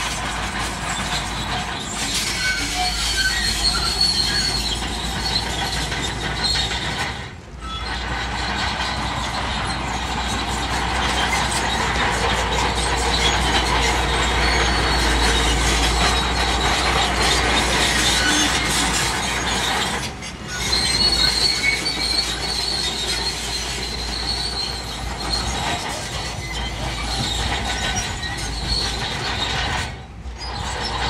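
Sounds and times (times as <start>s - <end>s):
bulldozer diesel engine: 0.0s - 31.0s
steel tracks squealing and clattering: 0.0s - 31.0s.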